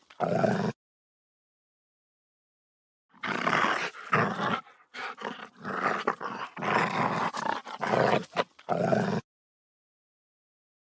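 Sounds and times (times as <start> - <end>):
animal growling and roaring: 3.2 - 9.2.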